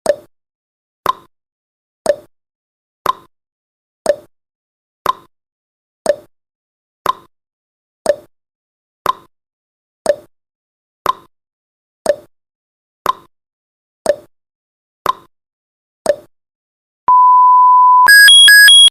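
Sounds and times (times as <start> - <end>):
steady beep tone: 17.1 - 18.9
timer ticking: 18.0 - 18.9.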